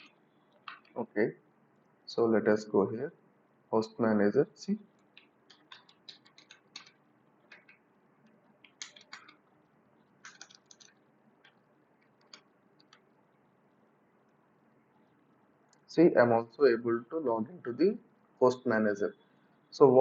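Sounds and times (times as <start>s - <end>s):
keyboard typing: 0.0s - 1.0s, 5.0s - 7.8s, 8.6s - 9.4s, 10.2s - 13.0s.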